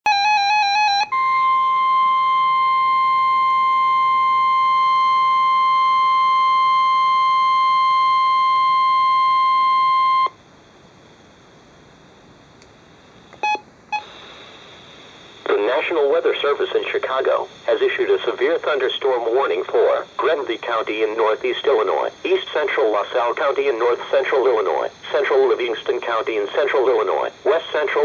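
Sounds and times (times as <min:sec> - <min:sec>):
steady alarm tone: 0:00.1 - 0:10.4
faint radio hiss: 0:06.4 - 0:28.0.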